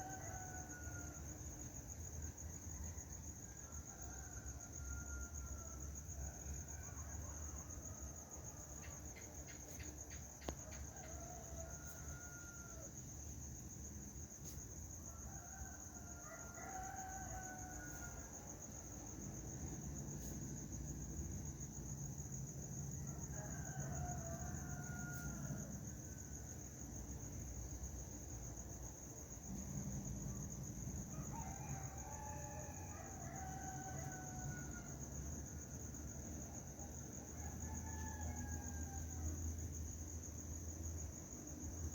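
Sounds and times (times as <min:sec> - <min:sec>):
rooster crowing: 0:00.0 - 0:01.3, 0:02.8 - 0:08.9, 0:10.4 - 0:12.9, 0:15.1 - 0:18.4, 0:23.0 - 0:25.8, 0:31.1 - 0:35.1, 0:37.2 - 0:39.6
crickets chirring: 0:00.0 - 0:41.9.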